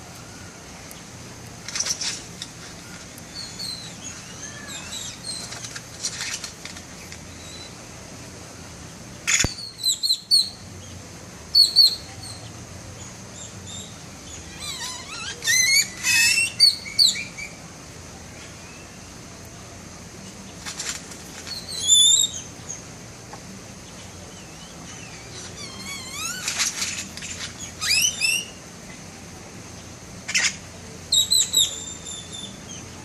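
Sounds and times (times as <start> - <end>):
bird chirps and whistles: 9.3 - 10.6, 14.6 - 17.6, 21.5 - 22.5, 27.7 - 28.6, 30.3 - 32.6.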